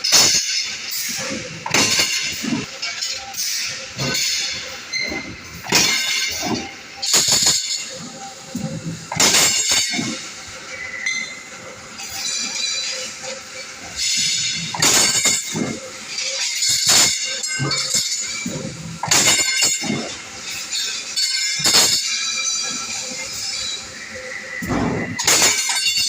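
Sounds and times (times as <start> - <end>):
power press striking sheet metal: 0.0 - 10.3, 13.9 - 23.6, 24.6 - 26.0
metal clinking and rattling: 12.0 - 23.8.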